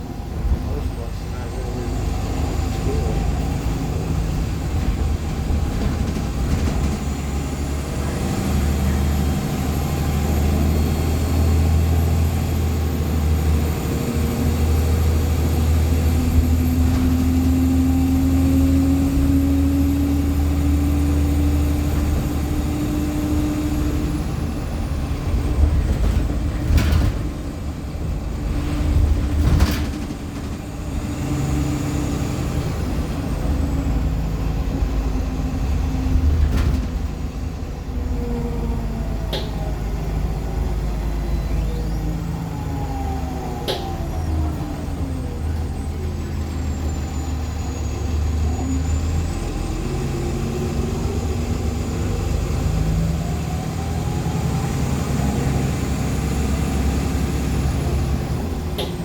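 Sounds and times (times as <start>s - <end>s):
bus engine drone: 0.0s - 59.0s.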